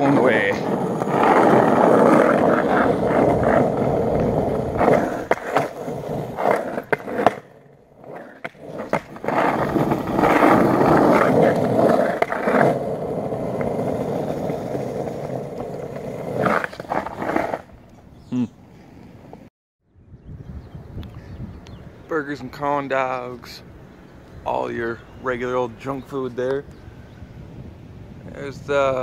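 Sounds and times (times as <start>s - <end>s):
skateboard wheels clicking over cracks: 0.0s - 17.7s
skateboard wheels rolling on pavement: 0.0s - 19.5s, 22.0s - 29.0s.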